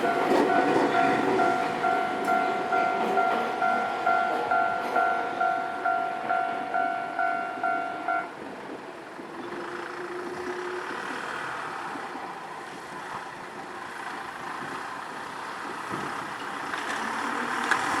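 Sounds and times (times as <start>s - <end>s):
level crossing warning bell: 0.0s - 8.4s
traffic noise: 0.0s - 18.0s.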